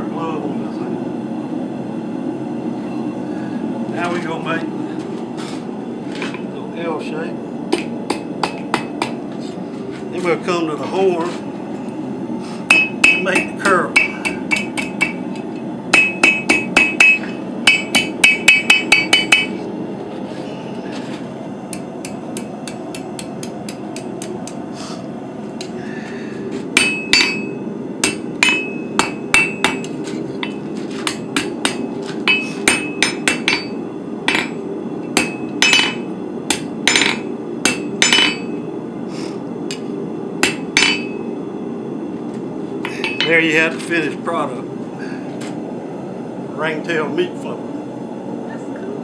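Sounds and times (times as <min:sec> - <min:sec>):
hammer striking anvil with ringing: 0:12.7 - 0:15.2, 0:15.9 - 0:19.6, 0:26.8 - 0:38.6, 0:40.4 - 0:41.3, 0:43.0 - 0:43.3.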